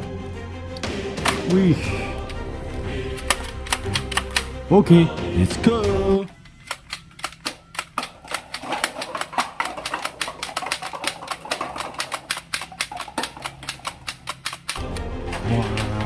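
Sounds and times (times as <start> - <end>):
toy gun clicking rapidly: 3.2 - 4.5, 6.3 - 16.0.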